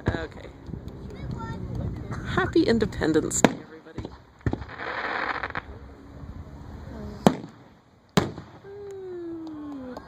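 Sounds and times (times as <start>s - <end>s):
firework crackling: 3.1s - 5.8s, 7.2s - 10.0s
firework bangs: 3.3s - 5.8s, 7.2s - 8.8s.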